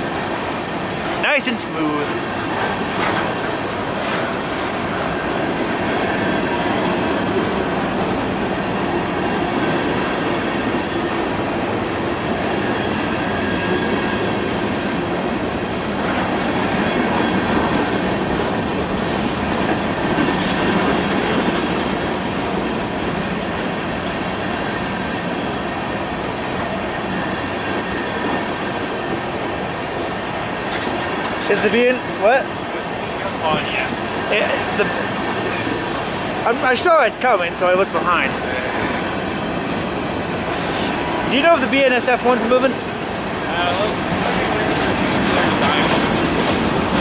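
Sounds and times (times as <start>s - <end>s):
train wheels rumbling on rails: 0.0s - 47.0s
wheels clacking over rail joints: 39.6s - 47.0s.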